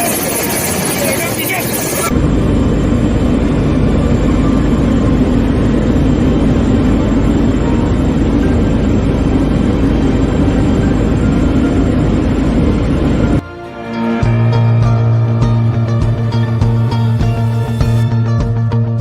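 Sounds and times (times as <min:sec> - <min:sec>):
helicopter rotor rumble: 0:00.0 - 0:18.7.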